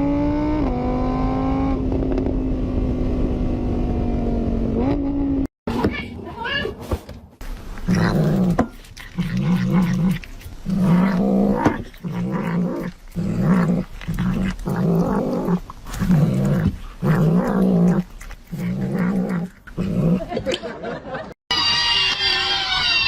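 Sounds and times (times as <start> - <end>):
pet growling: 7.4 - 20.7.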